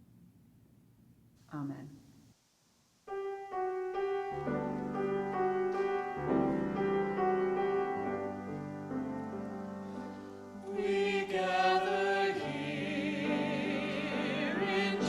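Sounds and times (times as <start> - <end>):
slow piano hymn: 3.1 - 15.0.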